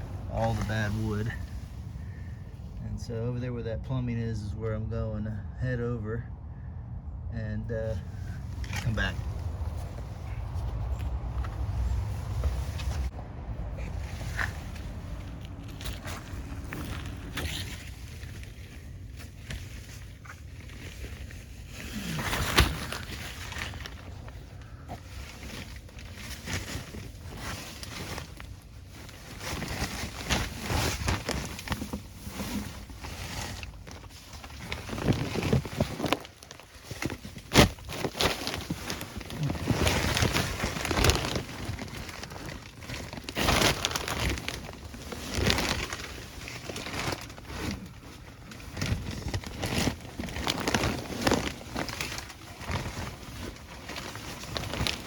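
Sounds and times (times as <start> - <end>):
person crawling rustling and scraping: 13.8 - 55.0.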